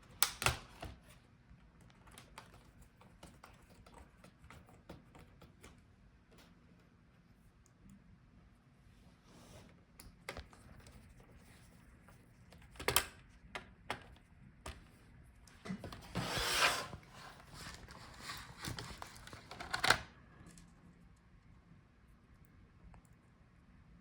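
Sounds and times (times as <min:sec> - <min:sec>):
plastic and metal scraping: 0:15.7 - 0:19.9.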